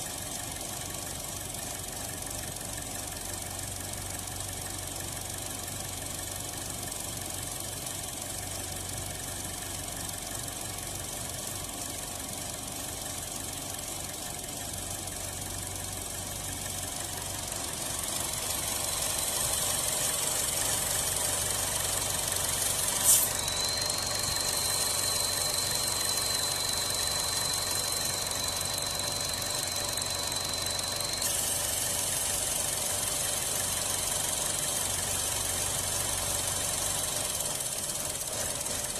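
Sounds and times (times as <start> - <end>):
rough engine idle: 0.0 - 38.9
steady high whistle: 18.6 - 34.8.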